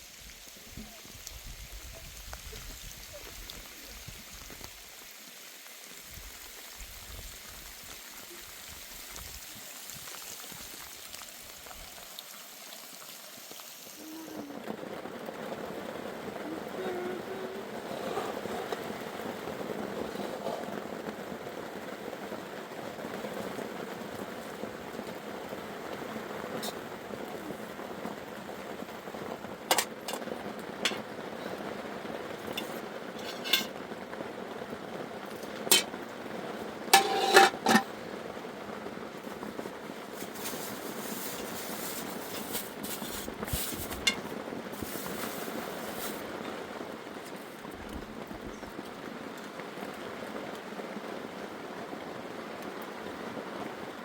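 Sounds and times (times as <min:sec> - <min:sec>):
steady hiss: 0:00.0 - 0:47.7
metal pots and utensils clinking: 0:29.7 - 0:31.1, 0:32.4 - 0:33.8, 0:35.4 - 0:36.0, 0:36.9 - 0:37.9, 0:43.7 - 0:44.3.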